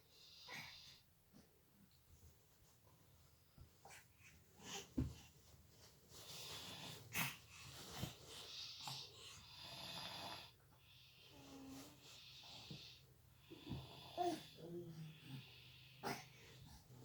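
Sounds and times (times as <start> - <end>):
soft snoring: 8.0 - 17.0.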